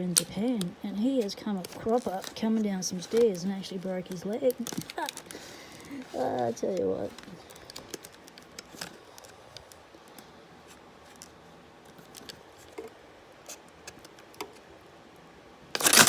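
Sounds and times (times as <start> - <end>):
plastic blister pack being cut: 15.8 - 16.0.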